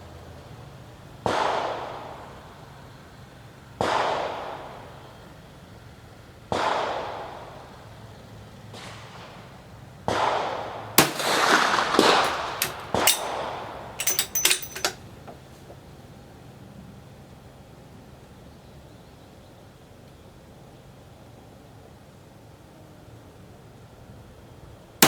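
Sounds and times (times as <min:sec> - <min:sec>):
rifle shots echoing: 0:10.1 - 0:15.0
metallic clicks of rifle action: 0:11.0 - 0:13.4, 0:14.0 - 0:15.0
clattering: 0:11.0 - 0:15.5.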